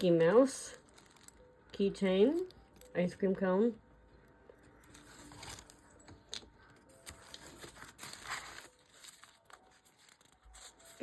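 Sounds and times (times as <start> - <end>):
packaging rustling: 0.2 - 1.5, 4.8 - 11.0.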